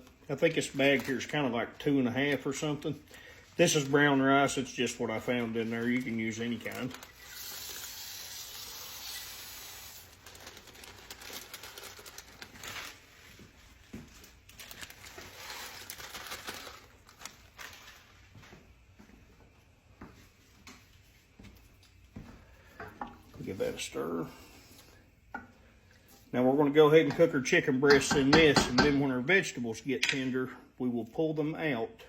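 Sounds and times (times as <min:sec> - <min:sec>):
rice pouring into a pot: 0:06.1 - 0:12.3.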